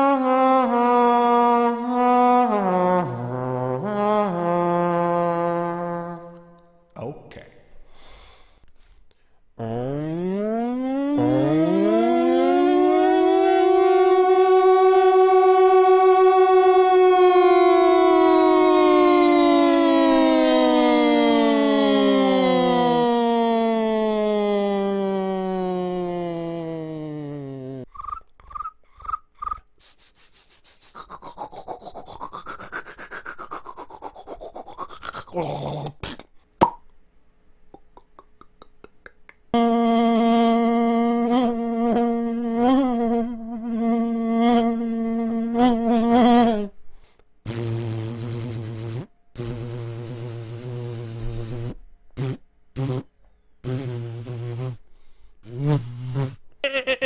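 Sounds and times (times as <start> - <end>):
person imitating buzzing bee: 9.6 - 36.2, 37.8 - 46.7, 47.5 - 54.8, 55.4 - 57.0
mouth-made fast scrubbing: 29.4 - 35.4
mouth-made sharp pop: 36.6 - 36.9, 37.8 - 39.5.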